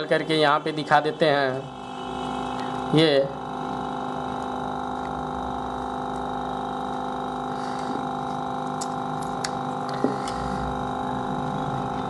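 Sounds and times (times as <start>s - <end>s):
electrical hum: 0.0s - 12.0s.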